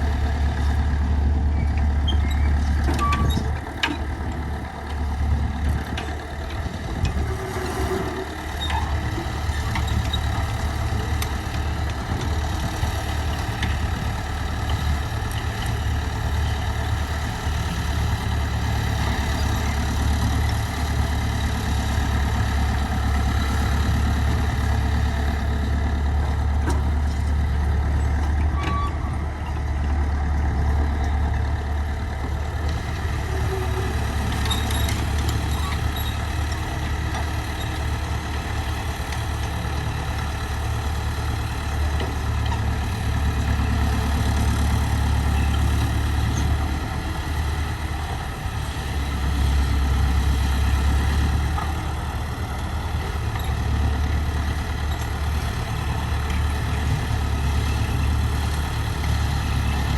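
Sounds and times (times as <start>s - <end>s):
heavy engine droning: 0.0s - 59.9s.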